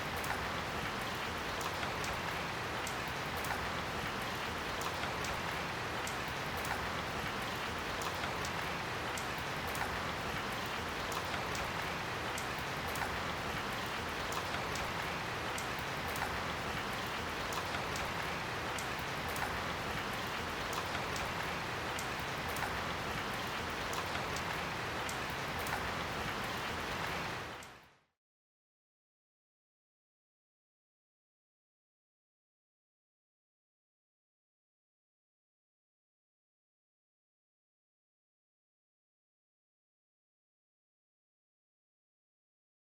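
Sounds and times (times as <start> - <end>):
light rain drizzling: 0.0 - 27.9.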